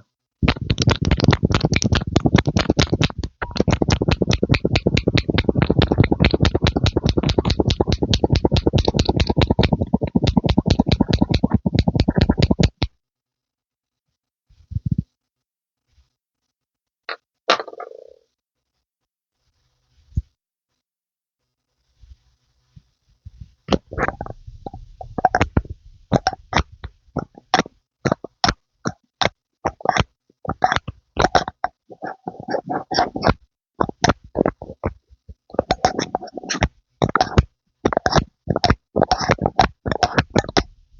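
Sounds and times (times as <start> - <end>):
rapid pumping strokes: 0.4 - 12.9
wet squelchy pumping pops: 0.4 - 13.0, 23.7 - 40.7.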